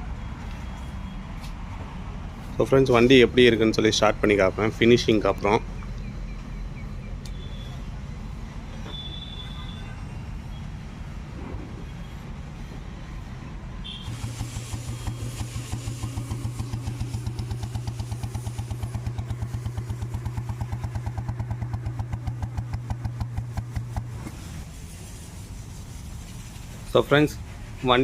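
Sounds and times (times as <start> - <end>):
motorcycle engine running: 13.8 - 25.4.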